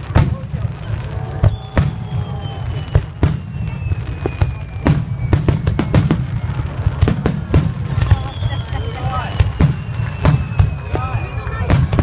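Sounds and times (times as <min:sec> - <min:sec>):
fireworks bangs: 0:00.0 - 0:12.0
firework whistle sliding down: 0:01.3 - 0:06.6, 0:08.0 - 0:12.0.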